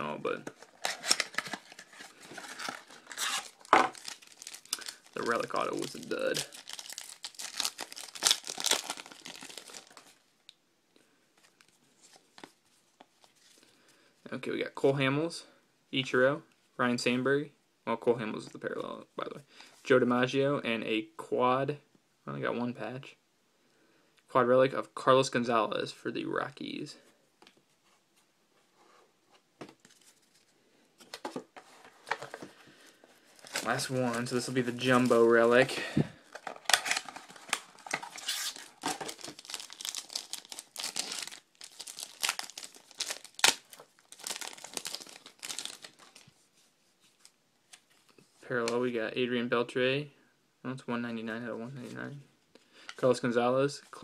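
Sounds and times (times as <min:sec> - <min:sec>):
card pack wrapper crinkling: 0:00.3 - 0:10.2, 0:33.3 - 0:46.3.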